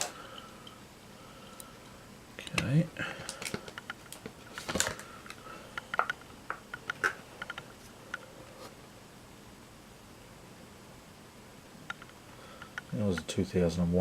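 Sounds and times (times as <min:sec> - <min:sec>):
plastic blister pack crackling: 0:03.2 - 0:05.4.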